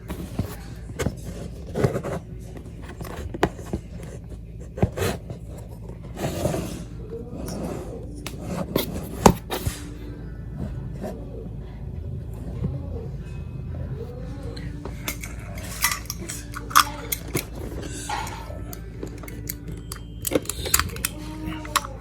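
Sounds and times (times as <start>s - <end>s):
packaging clicks and scrapes: 0.0s - 10.0s, 14.6s - 22.0s.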